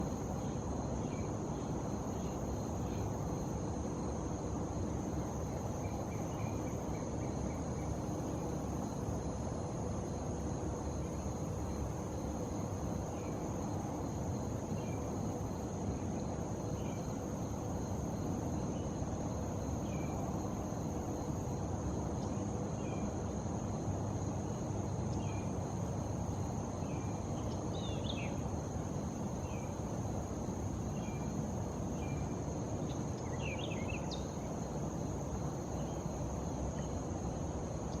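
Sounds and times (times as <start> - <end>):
low background noise: 0.0 - 38.0.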